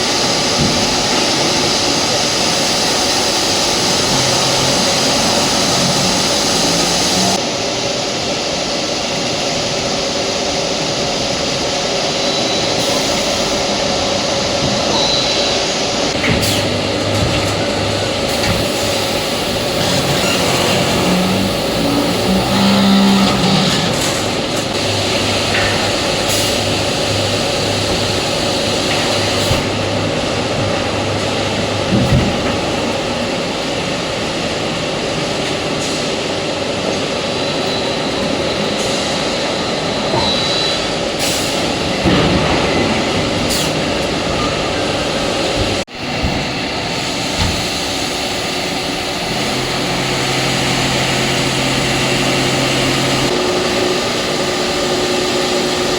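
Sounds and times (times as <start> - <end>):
machine hum with hiss: 0.0 - 55.9
machine knocks and clanks: 16.1 - 34.1, 41.6 - 47.9.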